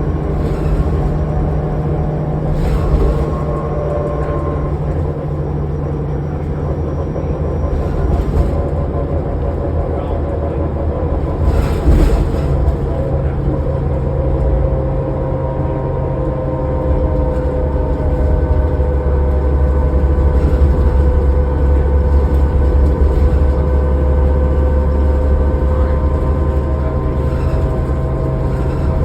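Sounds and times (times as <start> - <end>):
bus engine drone: 0.0 - 29.0
steady whine: 0.0 - 29.0.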